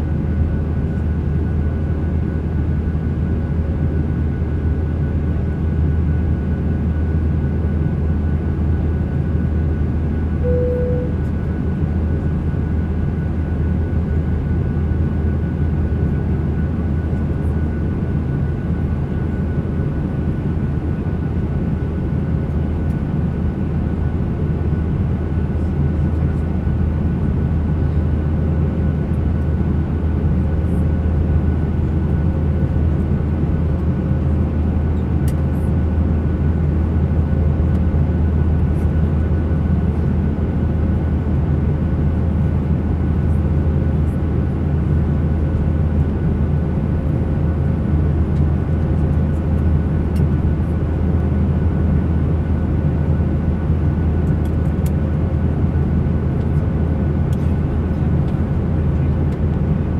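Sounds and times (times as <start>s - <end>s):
airliner cabin engine drone: 0.0s - 59.9s
thin steady whine tones: 10.4s - 11.2s.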